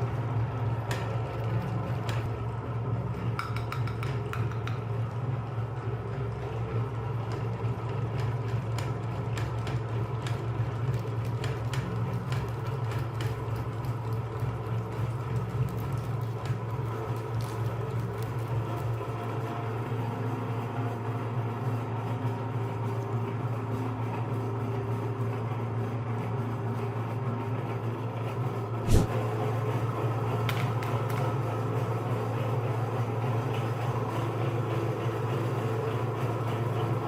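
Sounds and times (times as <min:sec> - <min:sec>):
meat grinder motor humming: 0:00.0 - 0:27.6.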